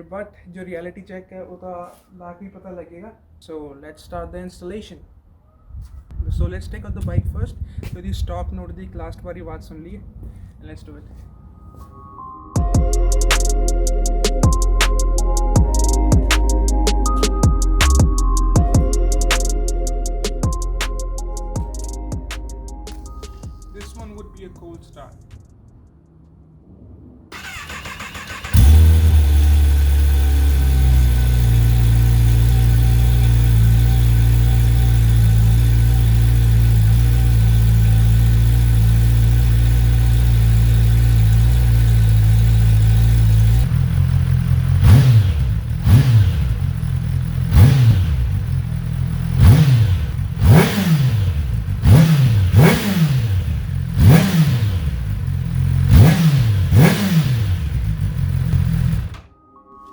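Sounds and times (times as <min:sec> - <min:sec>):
motorcycle engine revving: 0:27.3 - 0:59.3
motorcycle engine idling: 0:27.4 - 0:59.2
motorcycle starter cranking: 0:27.4 - 0:59.2.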